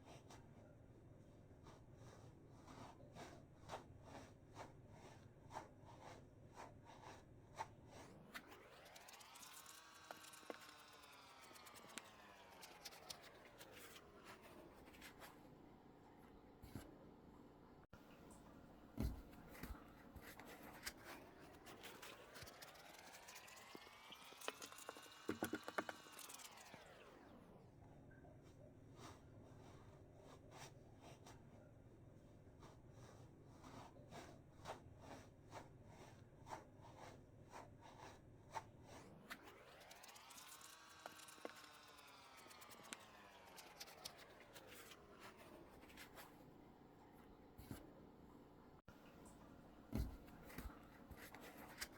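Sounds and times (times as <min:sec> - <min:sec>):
foam toy scratching and clicking: 0:01.6 - 0:15.5, 0:18.1 - 0:27.3, 0:32.6 - 0:46.6, 0:49.1 - 0:51.9.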